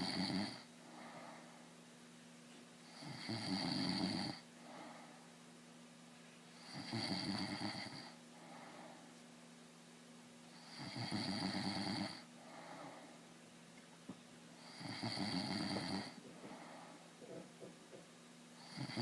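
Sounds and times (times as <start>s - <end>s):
man snoring: 0.0s - 1.2s, 2.9s - 4.4s, 6.6s - 8.2s, 10.6s - 13.0s, 14.6s - 16.9s, 18.6s - 19.0s.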